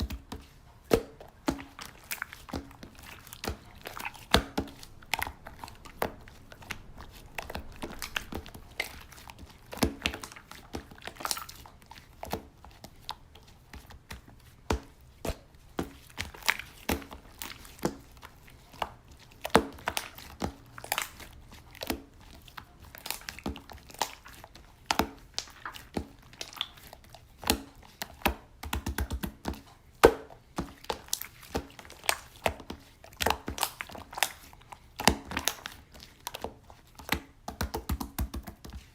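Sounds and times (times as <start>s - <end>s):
slime clicking and popping: 30.8s - 38.9s.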